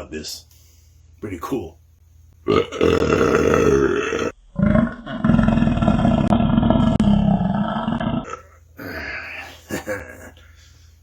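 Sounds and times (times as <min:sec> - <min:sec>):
man belching: 0:02.4 - 0:10.4.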